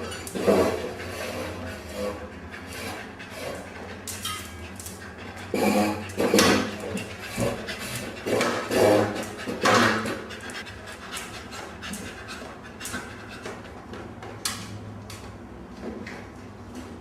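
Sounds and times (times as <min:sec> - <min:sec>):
dog panting: 0:00.4 - 0:13.8.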